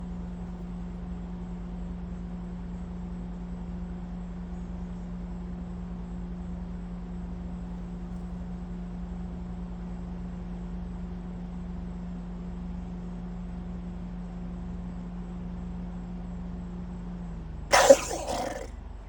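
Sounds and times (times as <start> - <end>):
even hiss: 17.7 - 18.7.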